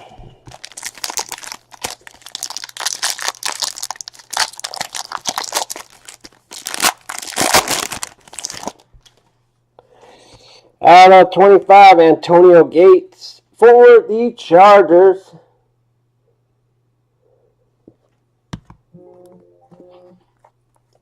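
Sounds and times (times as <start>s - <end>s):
card pack wrappers crinkling: 0.4s - 8.9s
faint low hum: 12.3s - 21.0s.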